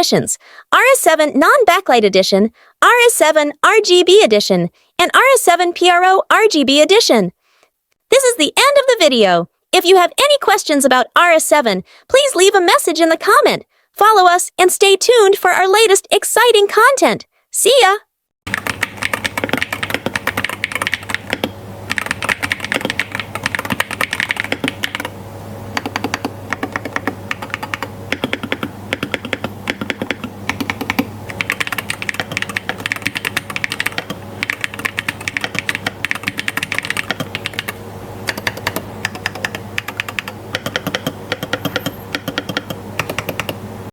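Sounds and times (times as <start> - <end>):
fast typing on keyboard: 18.5 - 25.2, 25.8 - 43.6.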